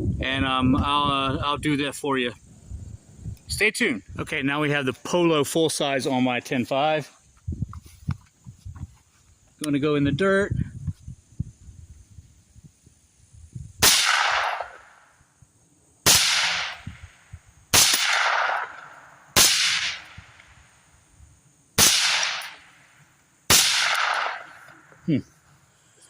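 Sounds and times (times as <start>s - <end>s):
suppressed rifle shots with echo: 13.8s - 15.0s, 16.0s - 17.0s, 17.7s - 20.4s, 21.8s - 22.7s, 23.5s - 24.8s.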